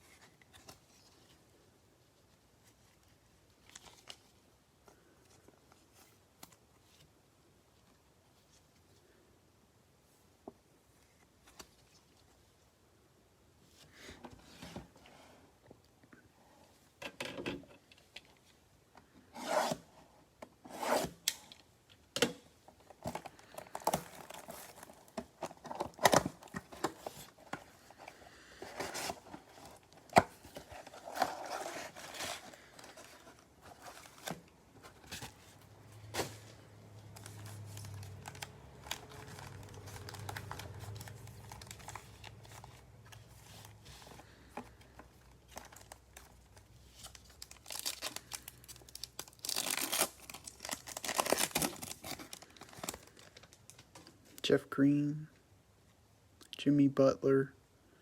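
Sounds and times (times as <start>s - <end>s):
card and plastic wrappers rubbing: 23.0s - 53.9s.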